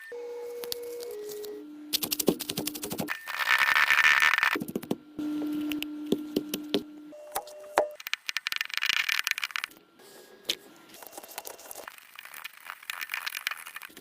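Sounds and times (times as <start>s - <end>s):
rapid crackling and crinkling: 10.5s - 14.0s.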